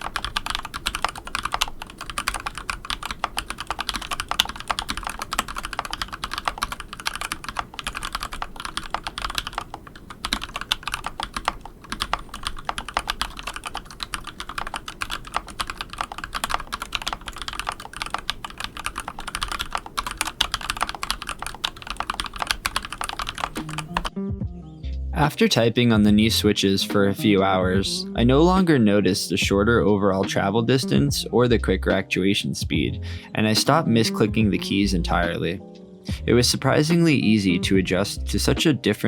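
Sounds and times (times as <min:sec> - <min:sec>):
fast mechanical keyboard typing: 0:00.0 - 0:24.1.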